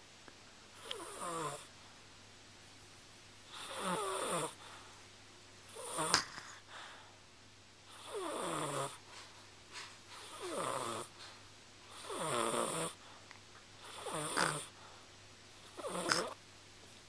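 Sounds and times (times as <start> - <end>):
quiet breathing: 3.4 - 16.4
person snoring: 3.5 - 4.6, 5.7 - 6.6, 8.0 - 9.0, 10.2 - 11.1, 11.9 - 13.0, 13.8 - 14.7, 15.7 - 16.4.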